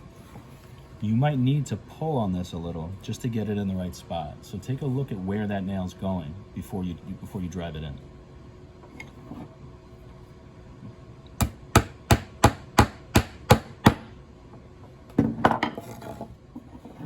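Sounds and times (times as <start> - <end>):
hammer tapping a nail: 11.4 - 14.1.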